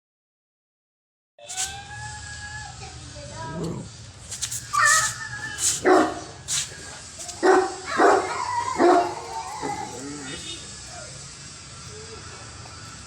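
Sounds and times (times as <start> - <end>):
brief scratchy noises: 1.4 - 1.8
dog barking: 5.8 - 6.3, 7.4 - 10.4.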